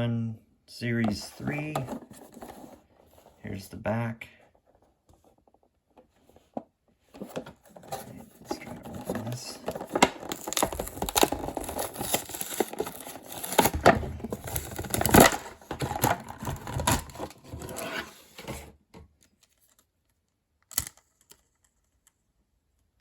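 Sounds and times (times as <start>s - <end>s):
toy packaging rustling and tearing: 1.3s - 3.3s, 7.2s - 18.5s.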